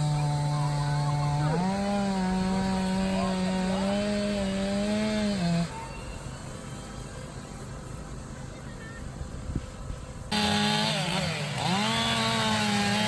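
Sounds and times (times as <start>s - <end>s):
chainsaw running at high revs: 0.0s - 5.8s, 10.3s - 13.0s.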